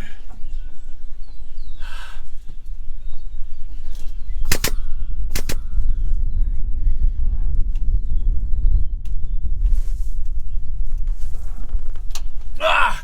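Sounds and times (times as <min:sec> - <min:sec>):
steady low rumble: 0:00.0 - 0:13.0
ratchet clicking: 0:04.5 - 0:05.6.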